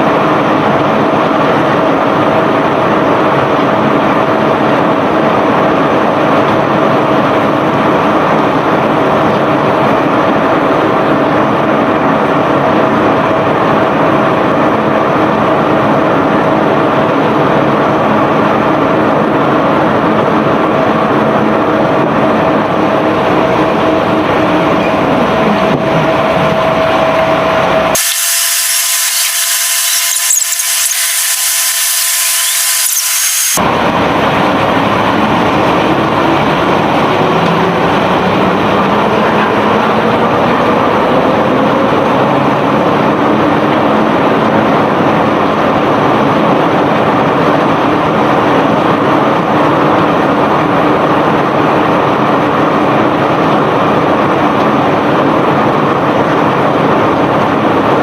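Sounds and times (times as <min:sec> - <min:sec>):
machinery din with whine: 0:00.0 - 0:58.0
harsh high-pitched hiss: 0:28.0 - 0:33.6.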